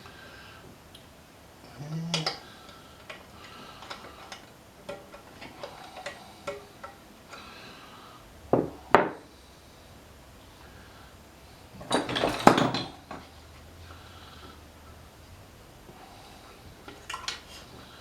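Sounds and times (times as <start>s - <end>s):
metallic clicks of tools handled: 3.0s - 7.4s.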